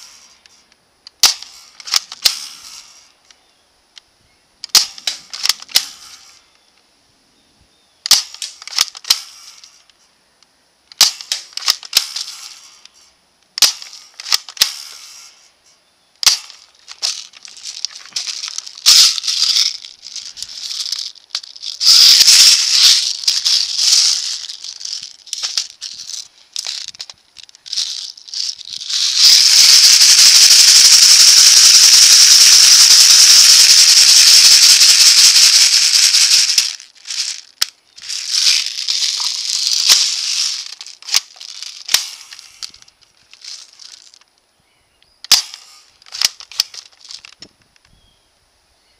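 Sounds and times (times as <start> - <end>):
airsoft rifle shots cracking: 1.2 - 3.0, 4.7 - 6.4, 8.1 - 9.8, 11.0 - 12.8, 13.6 - 15.3, 16.2 - 42.6, 45.3 - 46.8
loud continuous rattling: 16.2 - 44.2.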